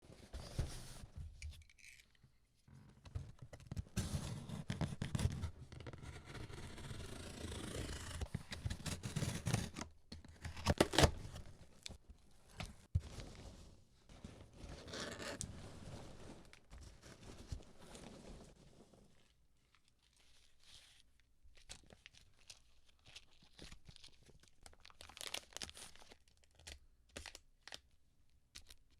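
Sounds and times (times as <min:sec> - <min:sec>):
packaging cutting and tearing: 0:04.0 - 0:11.4.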